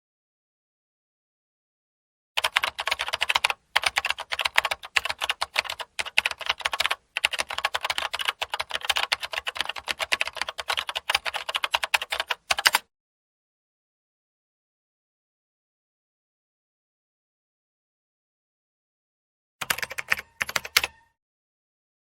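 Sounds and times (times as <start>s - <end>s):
fast typing on keyboard: 2.4s - 12.8s, 19.6s - 21.1s.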